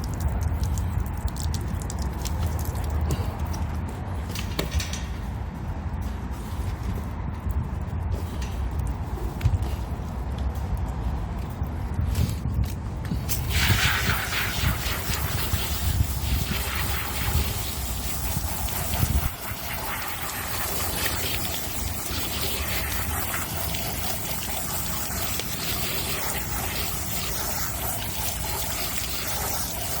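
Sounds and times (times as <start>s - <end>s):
water gushing: 0.0s - 3.5s, 13.3s - 30.0s.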